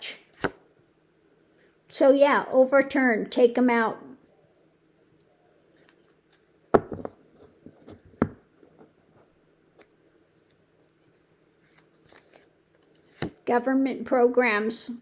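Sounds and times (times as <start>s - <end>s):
cards tapping on a table: 6.8s - 7.2s
cards clicking and rustling: 9.8s - 13.4s.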